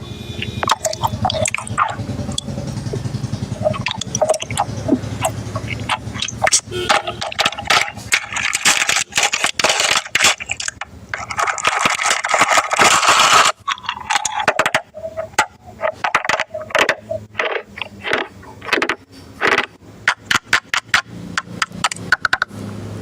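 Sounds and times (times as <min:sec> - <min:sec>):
food crunching: 0:00.4 - 0:22.5.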